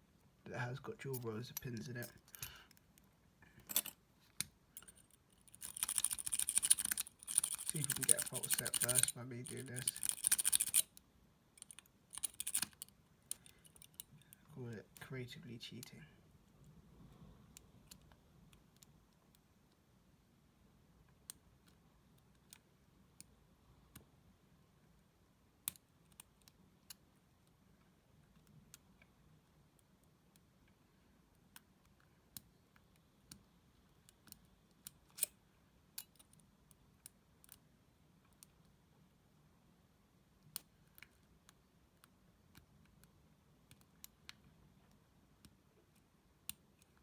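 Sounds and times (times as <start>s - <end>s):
metallic clicks of lock picking: 1.6s - 2.8s, 3.6s - 11.0s, 11.6s - 14.4s, 34.1s - 35.3s, 36.0s - 36.4s.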